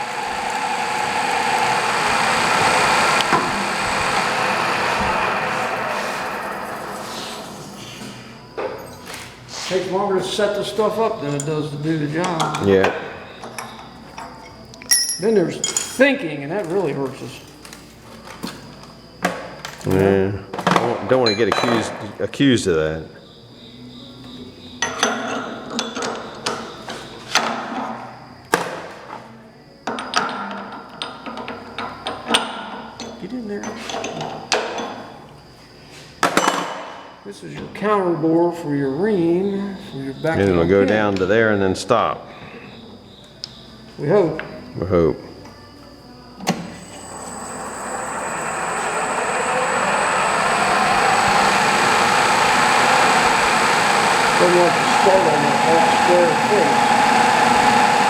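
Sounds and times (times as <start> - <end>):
motor running with high whine: 0.0 - 8.8, 46.5 - 58.0
metal tools clinking: 13.5 - 16.0.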